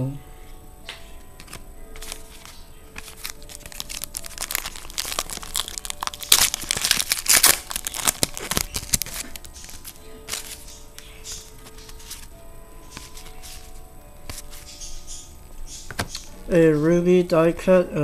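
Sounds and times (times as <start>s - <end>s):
plastic wrapper tearing and crinkling: 1.5s - 12.3s.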